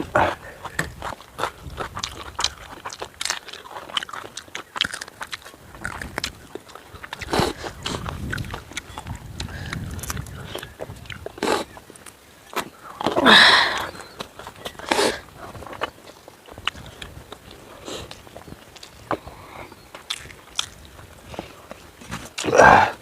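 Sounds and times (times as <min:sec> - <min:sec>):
person biting and chewing: 0:00.0 - 0:23.0
wet mouth clicks: 0:00.3 - 0:16.0, 0:20.0 - 0:20.8.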